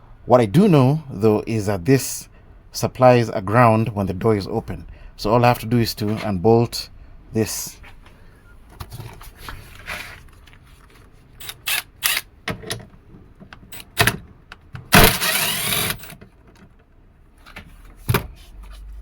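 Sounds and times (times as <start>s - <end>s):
ratchet rasping: 15.0s - 16.1s.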